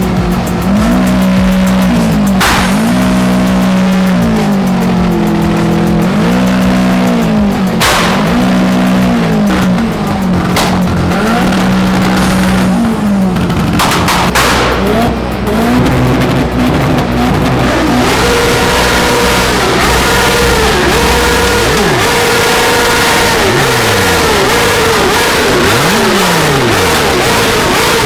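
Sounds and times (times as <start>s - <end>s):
car engine revving: 0.0s - 28.0s
sharp noisy blasts: 0.0s - 28.0s.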